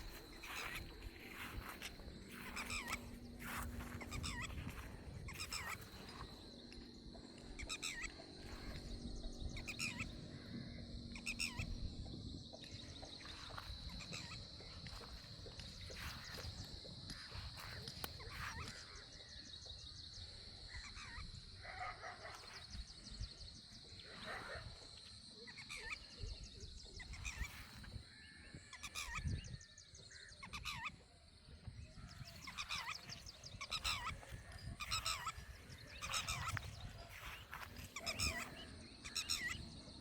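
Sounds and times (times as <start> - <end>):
birds hoarse calls: 0.0 - 11.8, 31.9 - 39.8
high insect drone: 0.0 - 40.0.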